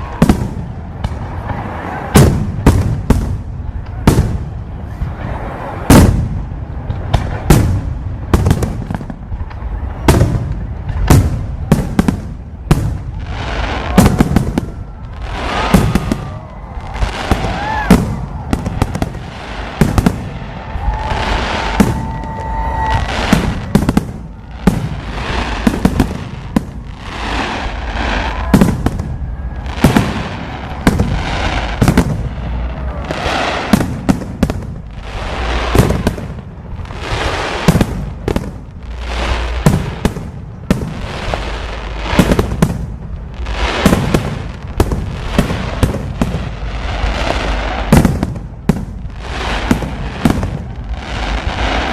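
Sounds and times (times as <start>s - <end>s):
fireworks bangs and crackles: 0.0s - 51.9s
firework whistle: 12.8s - 34.1s.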